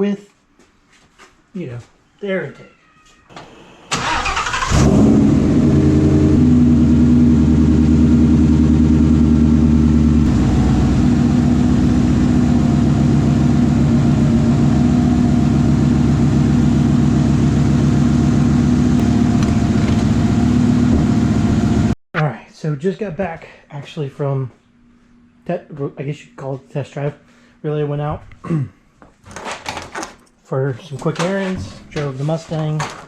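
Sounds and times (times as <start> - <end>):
car engine starting and idling: 3.4 - 22.0.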